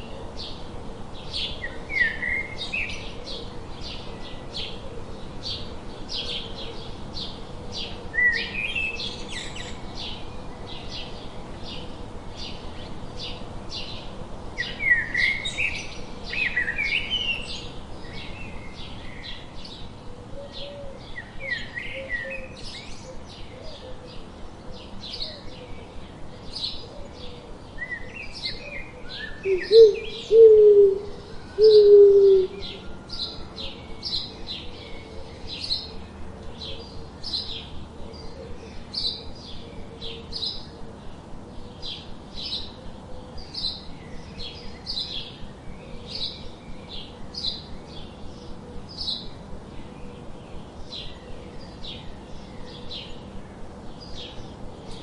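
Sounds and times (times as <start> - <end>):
birds chirping: 1.4 - 55.0
loud low-pitched bird calls: 26.6 - 41.0.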